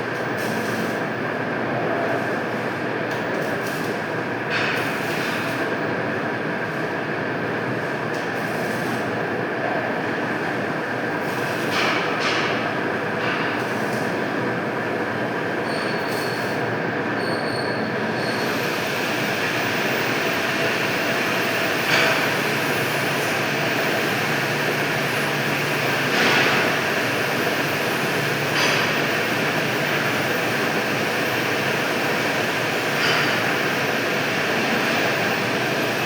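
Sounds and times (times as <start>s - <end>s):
lathe machining metal with squeal: 15.6s - 16.6s, 17.2s - 36.0s.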